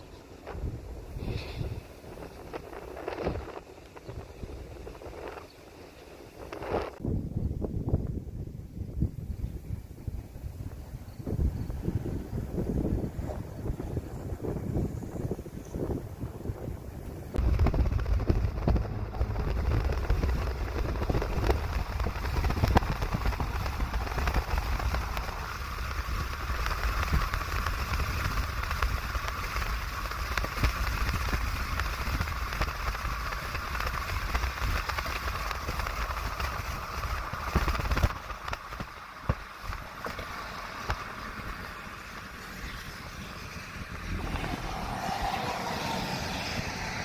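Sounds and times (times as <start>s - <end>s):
wind gusts buffeting microphone: 0.0s - 47.0s
rain and hail pelting: 17.4s - 46.5s.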